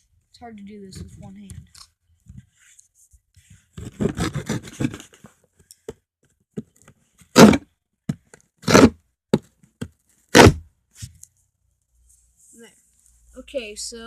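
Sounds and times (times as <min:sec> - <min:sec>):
saw blade rasping on cardboard: 0:03.7 - 0:05.2, 0:07.3 - 0:07.6, 0:08.6 - 0:09.0, 0:10.3 - 0:10.6.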